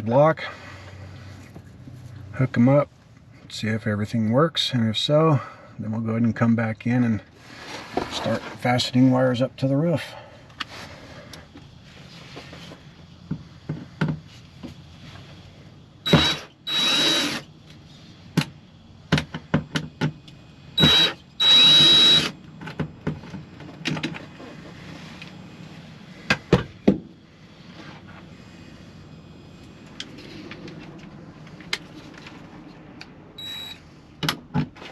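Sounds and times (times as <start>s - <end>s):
power drill whirring: 16.0s - 17.5s, 20.8s - 22.4s.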